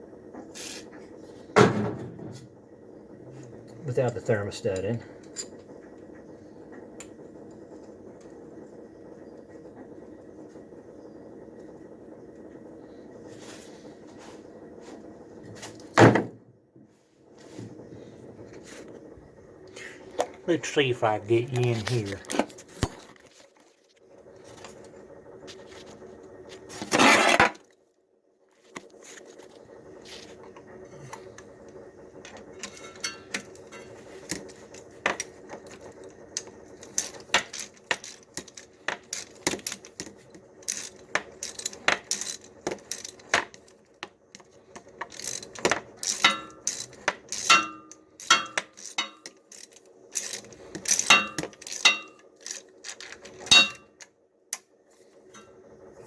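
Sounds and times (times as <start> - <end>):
steady hum: 0.0 - 56.0
metal tools and bolts clinking: 32.6 - 35.4, 45.0 - 54.0.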